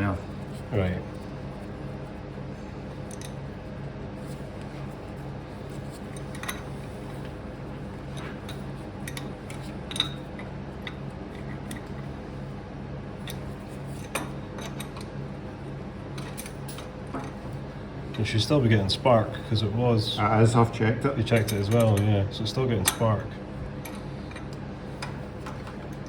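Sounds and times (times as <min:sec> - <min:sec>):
steady low hum: 0:00.0 - 0:26.0
hand tools clinking on metal: 0:21.2 - 0:23.2.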